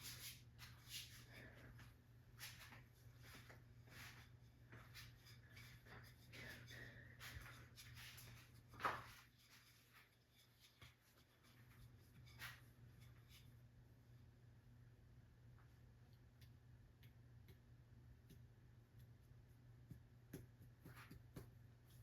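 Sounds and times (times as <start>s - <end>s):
faint low hum: 0.0s - 22.0s.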